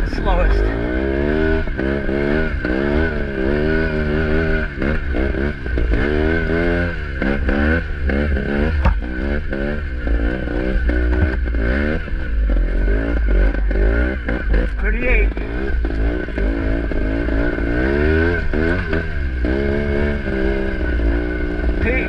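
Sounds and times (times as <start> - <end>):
motorcycle engine revving: 0.0 - 22.0
sharp knock: 8.8 - 9.0.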